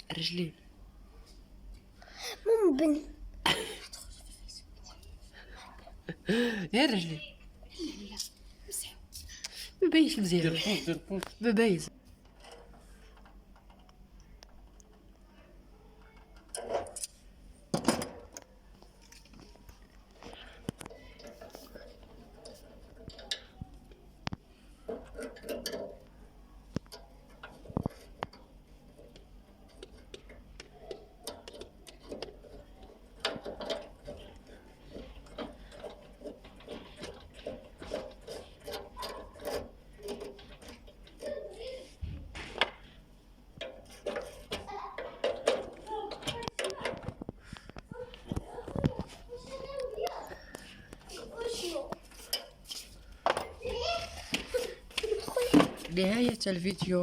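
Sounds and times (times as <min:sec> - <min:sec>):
clicks and knocks of hand tools: 0:26.7 - 0:41.4.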